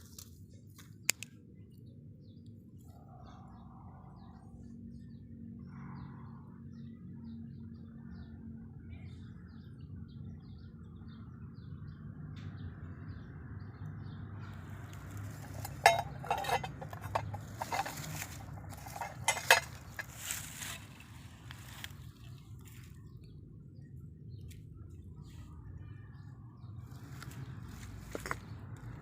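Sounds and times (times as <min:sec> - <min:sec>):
low outdoor hum: 0:00.0 - 0:29.0
hard objects clattering: 0:14.9 - 0:22.8.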